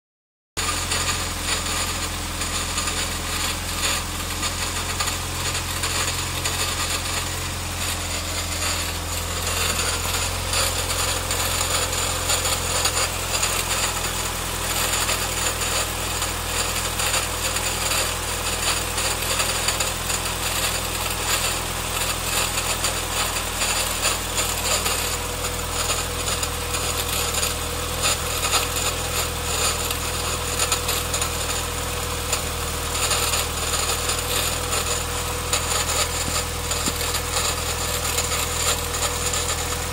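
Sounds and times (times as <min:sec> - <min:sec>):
car engine running: 0:00.6 - 0:39.9
fast continuous engine rattle: 0:00.6 - 0:39.9.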